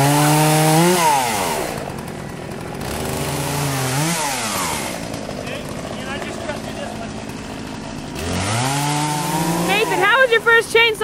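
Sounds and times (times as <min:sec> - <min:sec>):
chainsaw engine revving: 0:00.0 - 0:11.0.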